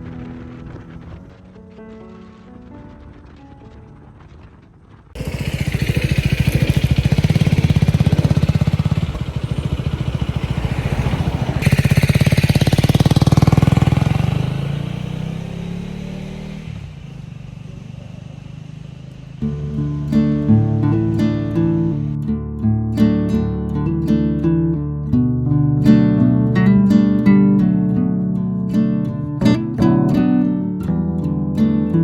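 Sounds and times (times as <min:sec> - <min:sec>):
motorcycle engine running: 0:00.0 - 0:22.4
quiet music: 0:19.4 - 0:32.0.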